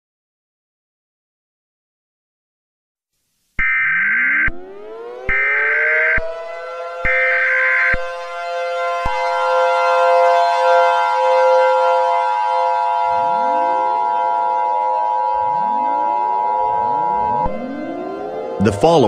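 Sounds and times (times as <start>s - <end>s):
civil defense siren wailing: 3.6s - 19.0s
high steady tone: 13.1s - 19.0s.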